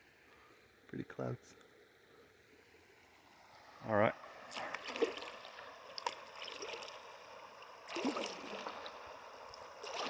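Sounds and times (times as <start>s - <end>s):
river running over shallows: 2.0s - 10.0s
kayak paddle splashing: 4.5s - 10.0s.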